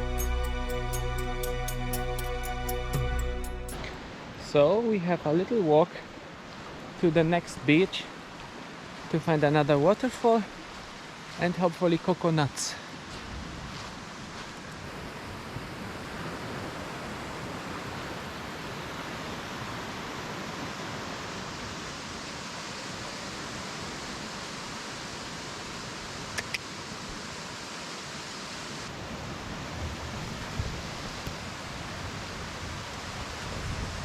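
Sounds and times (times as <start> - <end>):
water rushing: 0.0 - 12.9.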